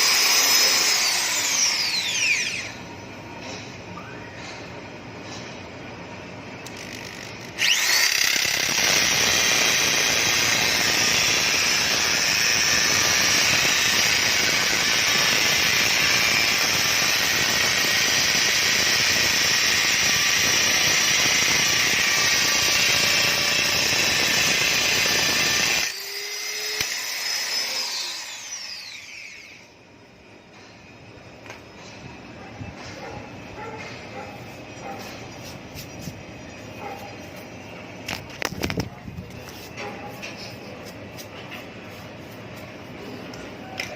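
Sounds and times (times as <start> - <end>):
electric drill boring into stone: 0.0 - 2.8, 6.6 - 29.8.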